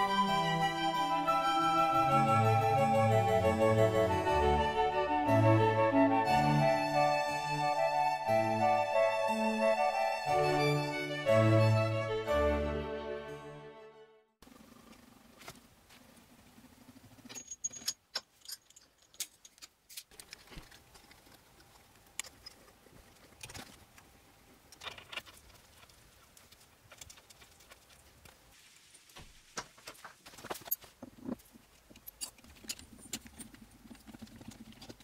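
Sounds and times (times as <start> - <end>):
metallic clinks: 17.2 - 19.6.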